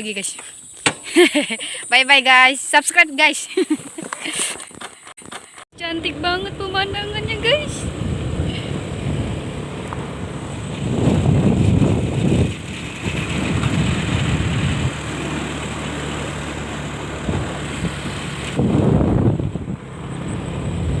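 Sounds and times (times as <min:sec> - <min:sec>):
engine humming: 0:05.5 - 0:21.0
wind buffeting microphone: 0:05.8 - 0:21.0.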